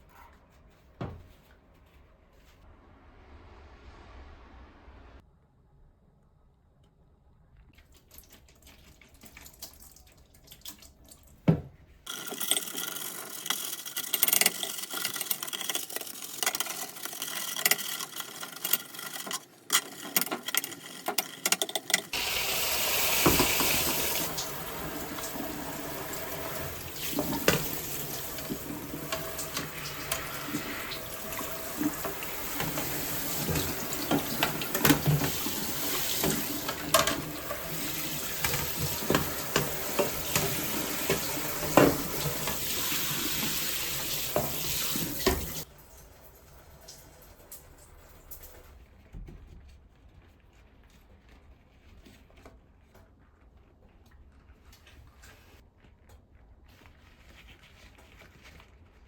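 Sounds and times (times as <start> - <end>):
water running from tap: 12.1 - 19.2, 19.9 - 48.6
clatter of handled parts: 12.1 - 22.2.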